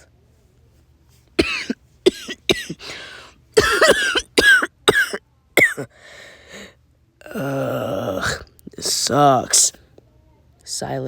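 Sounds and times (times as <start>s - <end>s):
person coughing harshly: 1.4s - 5.9s
person breathing in: 2.8s - 3.4s, 5.9s - 6.8s.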